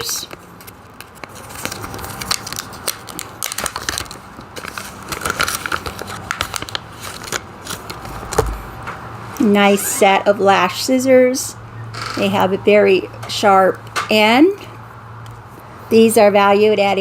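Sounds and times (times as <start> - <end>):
packaging crinkling: 0.0 - 8.8.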